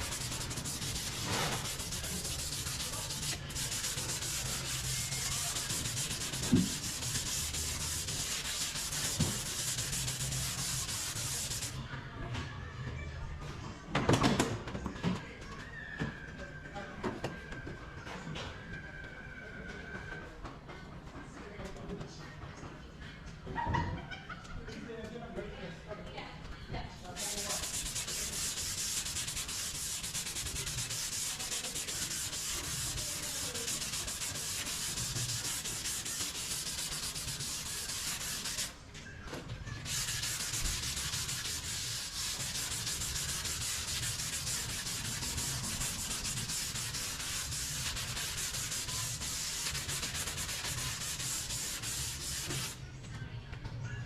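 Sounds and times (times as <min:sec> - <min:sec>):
sanding car body panel: 0:00.0 - 0:11.8, 0:27.2 - 0:38.7, 0:39.8 - 0:52.8.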